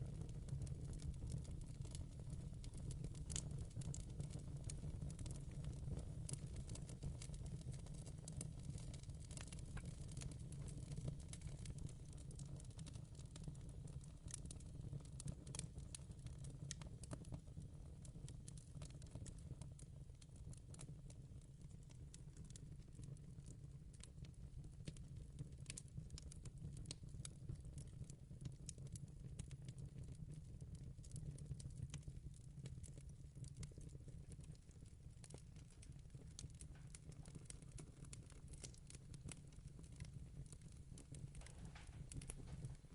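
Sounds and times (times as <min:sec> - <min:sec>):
wood fire crackling: 0:00.1 - 0:17.5, 0:32.9 - 0:42.9.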